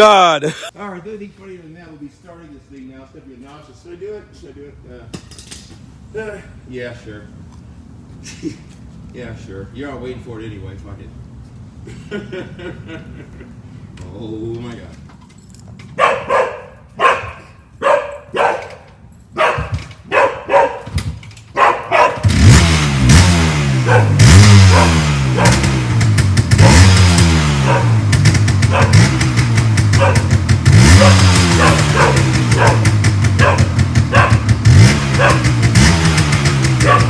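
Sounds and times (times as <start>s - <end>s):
dog barking: 16.0s - 20.9s, 21.5s - 22.3s, 23.9s - 25.7s, 26.6s - 26.9s, 27.6s - 28.0s, 28.7s - 29.1s, 29.9s - 34.5s, 35.1s - 35.5s, 36.8s - 37.0s
motorcycle engine revving: 22.0s - 37.0s.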